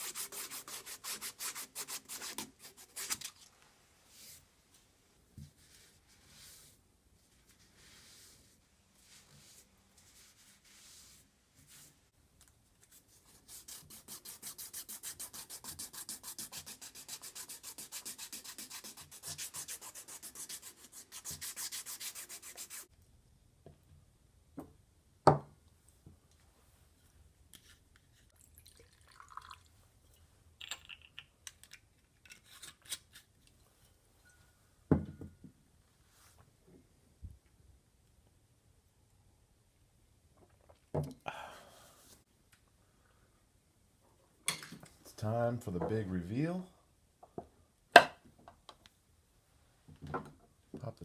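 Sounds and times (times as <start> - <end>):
sandpaper rubbing on wood: 0.0 - 3.2, 13.3 - 22.9.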